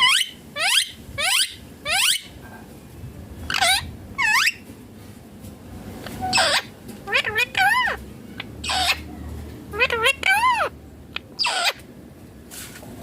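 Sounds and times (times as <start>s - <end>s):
parakeet screeching: 0.0s - 2.3s, 3.5s - 4.6s, 6.2s - 9.1s, 9.7s - 10.8s, 11.4s - 11.8s.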